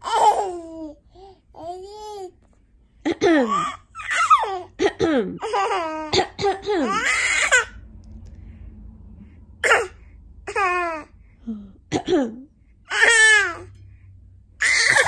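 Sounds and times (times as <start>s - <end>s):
child imitating sneezes and coughs: 9.6s - 10.0s, 14.7s - 15.0s.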